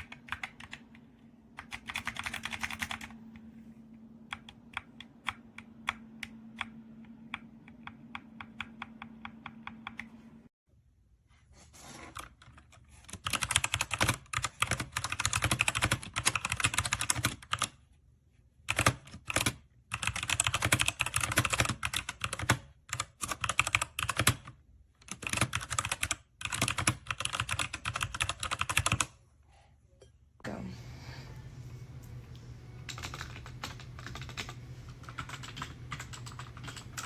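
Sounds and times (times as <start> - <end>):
typing on mechanical keyboard: 0.0 - 3.5, 4.3 - 10.2, 12.2 - 17.8, 18.7 - 29.1, 32.8 - 37.0.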